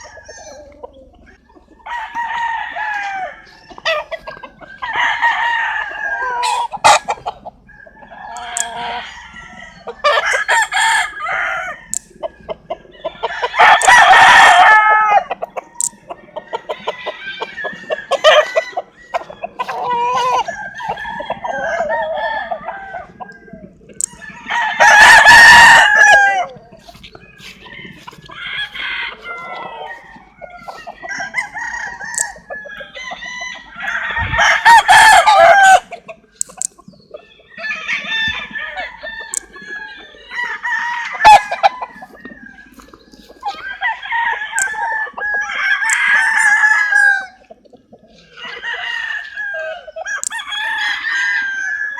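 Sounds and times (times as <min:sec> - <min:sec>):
chickens clucking: 0:00.0 - 0:51.9
roosters crowing: 0:00.0 - 0:51.9.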